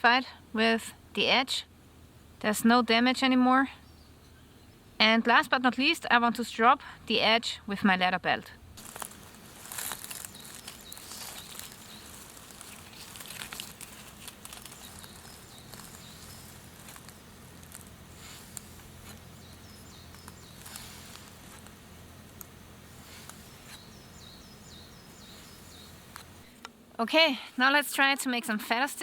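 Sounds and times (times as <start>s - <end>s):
knife stropping on leather: 20.6s - 21.6s.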